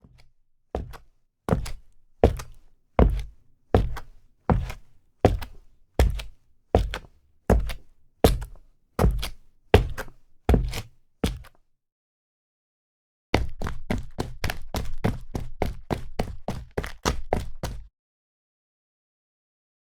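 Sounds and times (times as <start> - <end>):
boots walking on hard surface: 0.8 - 11.5.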